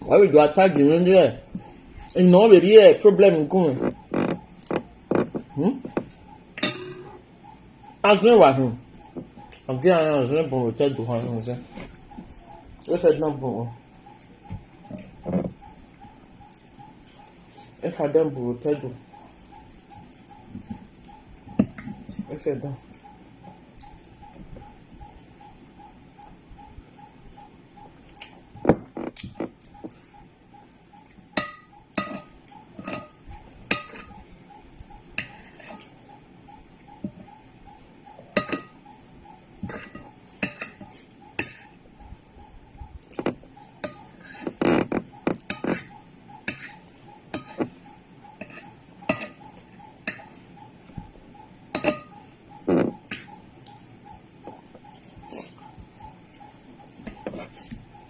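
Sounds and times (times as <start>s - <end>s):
cutlery scraping a dish: 3.8s - 7.2s, 31.4s - 34.2s, 35.2s - 36.0s, 38.3s - 38.8s, 39.6s - 41.8s, 43.2s - 47.8s, 48.4s - 50.5s, 51.7s - 53.4s, 56.8s - 57.8s.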